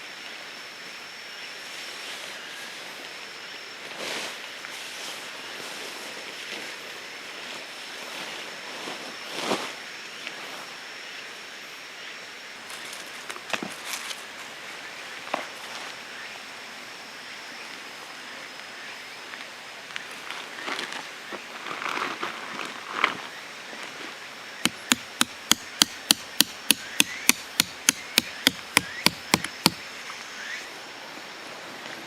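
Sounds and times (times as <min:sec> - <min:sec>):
sharp knocks: 0:24.7 - 0:29.8.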